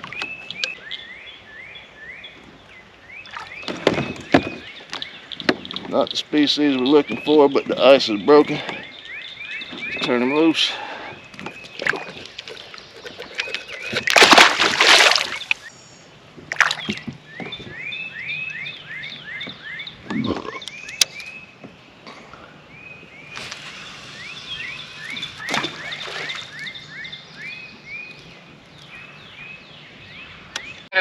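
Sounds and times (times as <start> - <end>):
water splash: 13.4 - 15.7, 16.5 - 17.0, 25.4 - 26.6.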